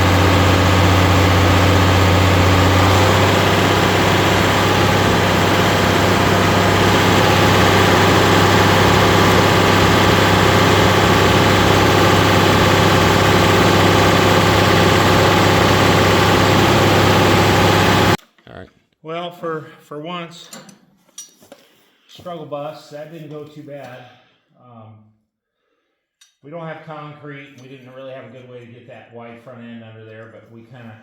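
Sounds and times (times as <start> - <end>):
tractor engine running: 0.0 - 18.2.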